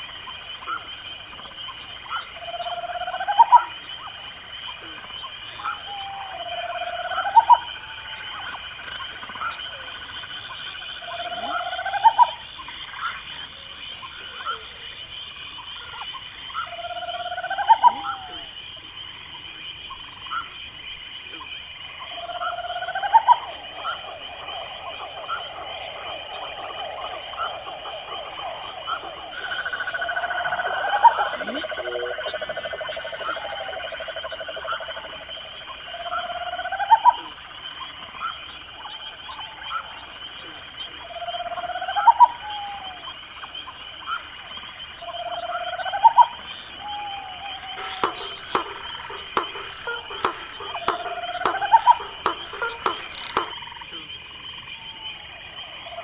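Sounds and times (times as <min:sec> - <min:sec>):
crickets trilling: 0:00.0 - 0:56.0
faint regular ticks: 0:45.0 - 0:54.0.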